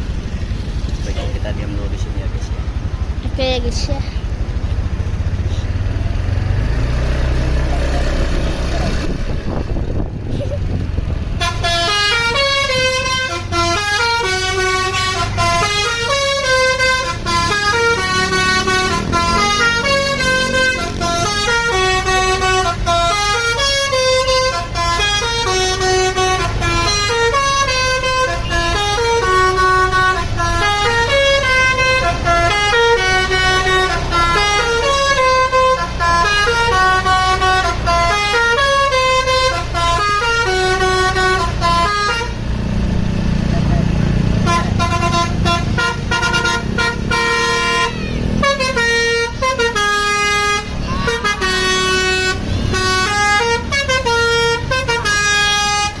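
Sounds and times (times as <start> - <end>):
bus engine rumble: 0.0 - 56.0
bus horn melody: 11.2 - 42.8, 43.5 - 56.0.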